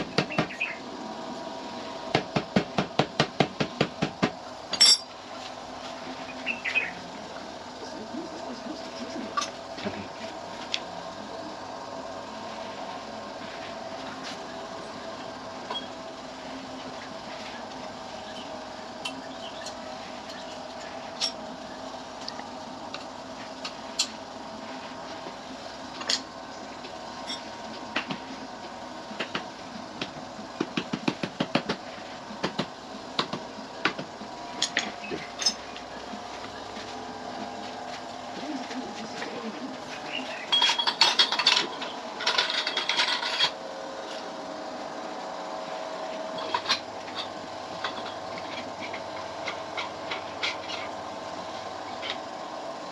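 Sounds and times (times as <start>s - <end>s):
faint hum: 0.0s - 52.9s
metal tools clinking: 4.7s - 5.1s, 40.5s - 43.6s.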